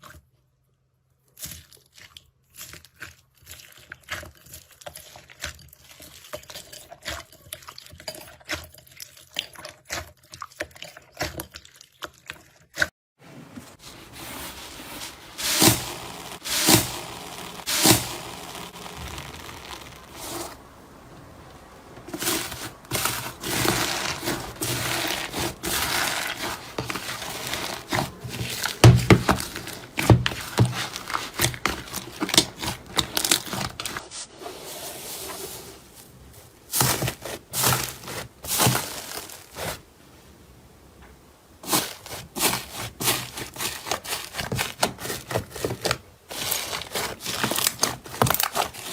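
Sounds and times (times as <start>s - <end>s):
slime squishing by hand: 13.7s - 21.1s, 21.8s - 39.8s, 41.6s - 48.9s.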